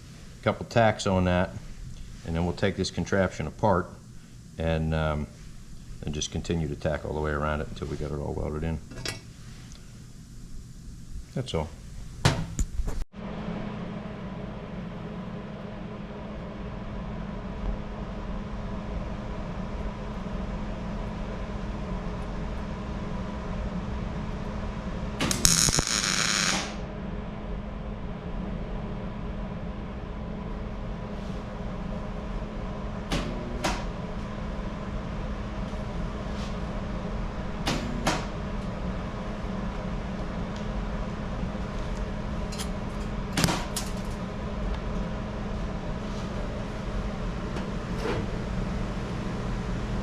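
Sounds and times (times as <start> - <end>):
welding machine humming: 20.8 - 27.6
welding hiss: 25.2 - 26.8.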